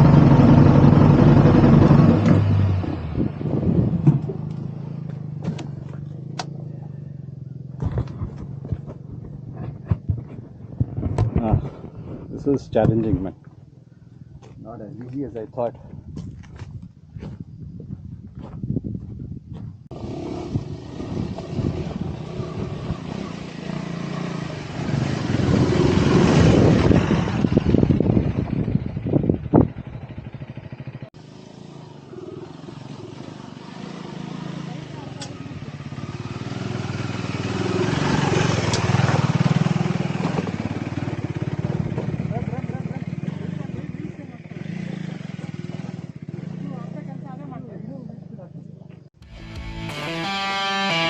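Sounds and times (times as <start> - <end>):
motorcycle engine low revs: 19.9 - 47.8.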